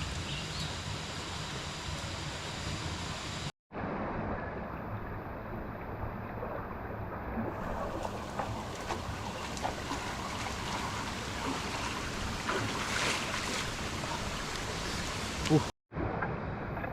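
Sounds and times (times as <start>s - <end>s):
rushing flowing water: 7.5s - 15.7s.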